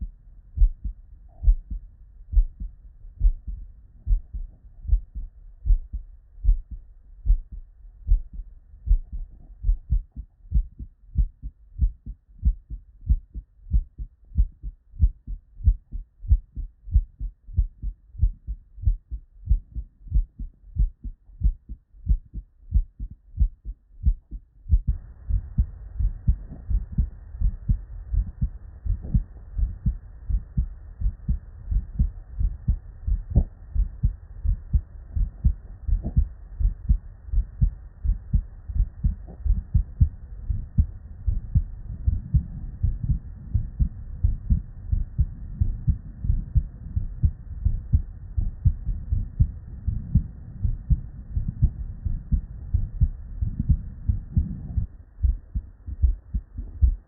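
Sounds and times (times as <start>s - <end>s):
faint steady hiss: 0.0s - 57.0s
heartbeat through stethoscope: 0.0s - 57.0s.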